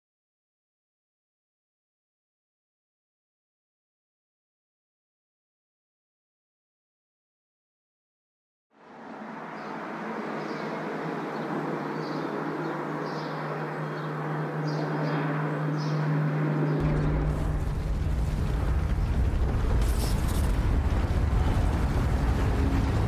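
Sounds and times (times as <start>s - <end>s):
steady hum: 10.7s - 23.0s
deep earthquake rumble: 16.8s - 23.0s.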